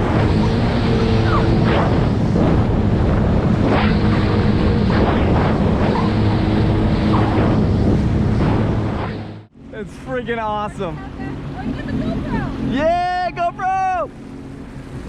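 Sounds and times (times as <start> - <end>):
wind buffeting microphone: 0.0 - 9.5
jet ski engine running: 0.0 - 15.0
water splashing: 0.0 - 15.0.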